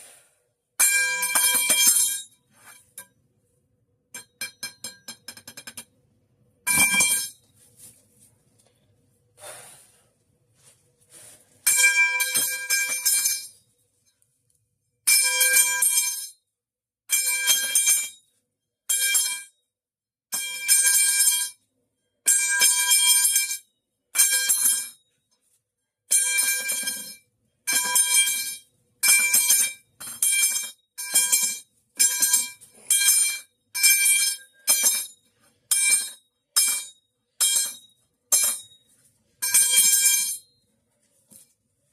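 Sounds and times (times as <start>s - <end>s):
metal pipe clang: 6.7s - 7.4s, 26.2s - 38.8s.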